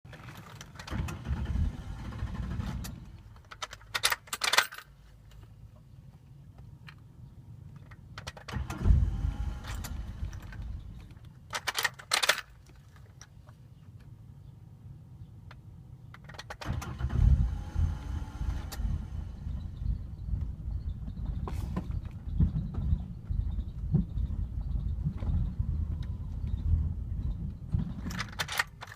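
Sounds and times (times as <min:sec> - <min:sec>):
metallic jangling: 0:03.5 - 0:05.0.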